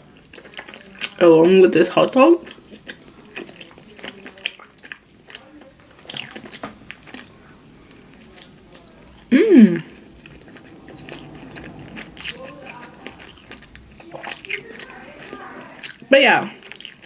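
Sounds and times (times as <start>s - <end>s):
chewing and crunching food: 0.0s - 9.3s, 10.0s - 17.0s
short hum bending in pitch: 9.0s - 14.1s.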